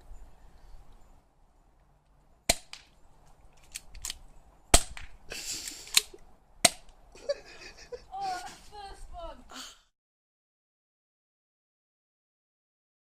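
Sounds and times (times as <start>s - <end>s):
bb gun shots: 2.5s - 2.9s, 4.0s - 5.2s, 5.9s - 6.9s.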